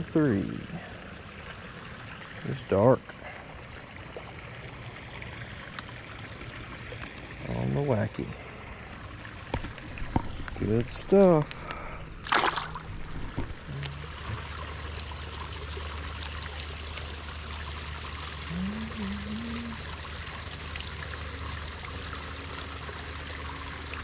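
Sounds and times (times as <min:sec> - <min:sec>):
trickle of running water: 0:00.0 - 0:24.0
low wavering tone: 0:13.5 - 0:14.4.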